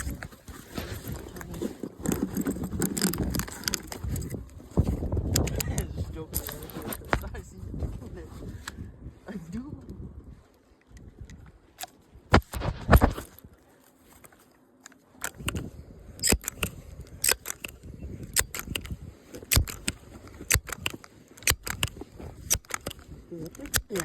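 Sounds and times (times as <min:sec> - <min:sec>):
footsteps crunching: 0:00.0 - 0:08.7.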